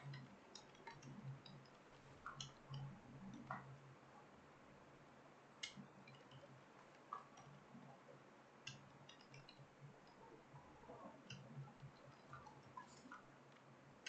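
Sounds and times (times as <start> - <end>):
room hum: 0.0 - 14.0.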